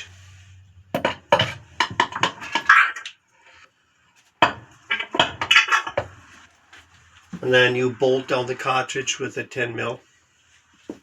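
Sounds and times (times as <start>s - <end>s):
metal clinks and knocks: 0.9s - 2.6s.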